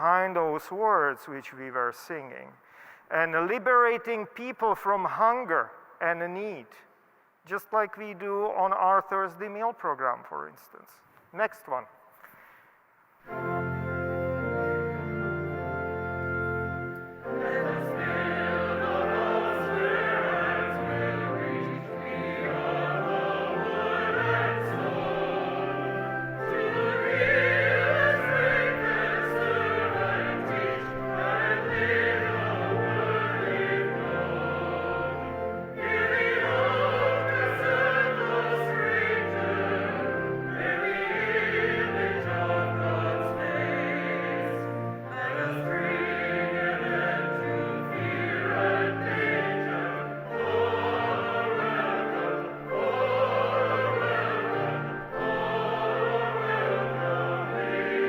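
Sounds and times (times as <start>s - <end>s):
choir singing a hymn: 13.3s - 58.0s.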